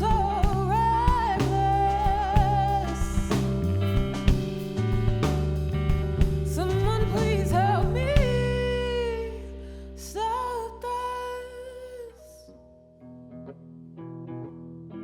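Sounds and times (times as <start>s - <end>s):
woman singing: 0.0s - 3.8s, 6.5s - 12.5s
drums: 0.0s - 9.5s
bass: 0.0s - 15.0s
guitar: 0.0s - 15.0s.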